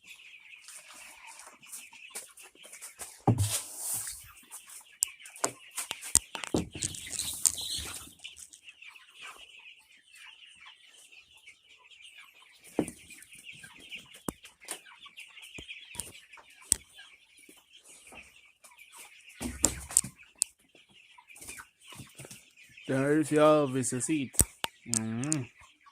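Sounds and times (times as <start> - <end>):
chickens clucking: 0.0 - 25.9
sharp taps and clicks: 24.3 - 25.5.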